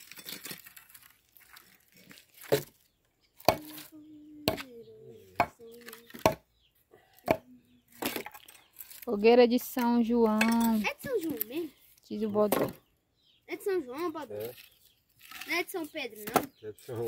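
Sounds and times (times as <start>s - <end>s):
faint voice: 3.6s - 6.1s.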